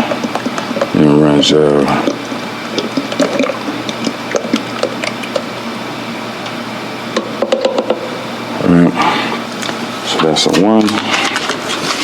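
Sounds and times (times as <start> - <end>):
oil pouring with gurgles: 0.0 - 5.8.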